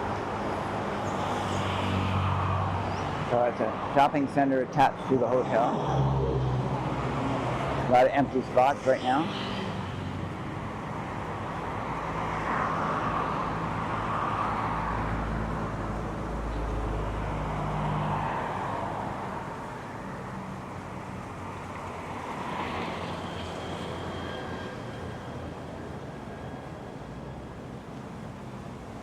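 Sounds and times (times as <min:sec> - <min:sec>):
vehicles passing by: 0:00.0 - 0:29.0.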